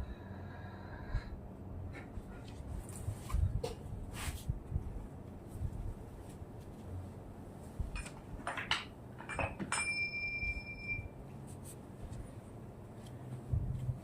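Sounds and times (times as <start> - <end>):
high-pitched ringing clink: 9.3 - 11.2.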